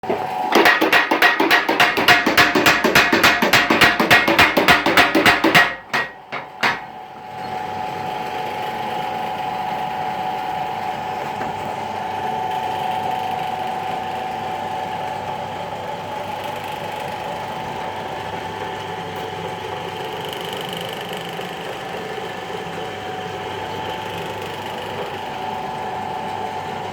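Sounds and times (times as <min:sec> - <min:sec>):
power hammer pounding: 0:00.5 - 0:06.9.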